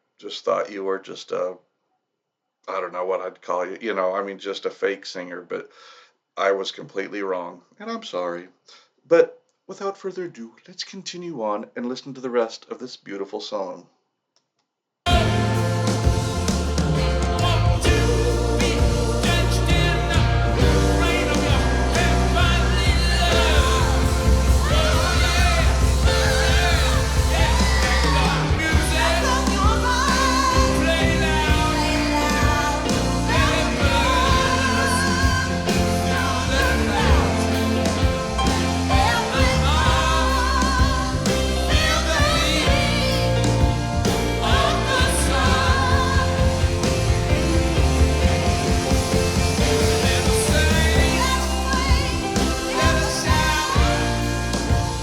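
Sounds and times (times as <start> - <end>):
bass line: 15.1 - 55.0
drum beat: 15.1 - 55.0
live rock band playing: 15.1 - 55.0
person singing: 15.1 - 55.0.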